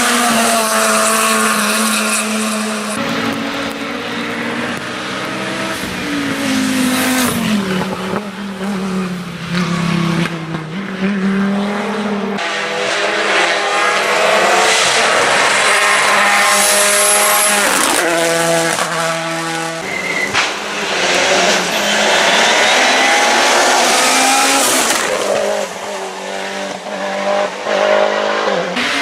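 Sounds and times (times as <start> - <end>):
race car engine accelerating hard: 0.0 - 19.9, 20.5 - 29.0
tyre squeal: 19.7 - 25.1.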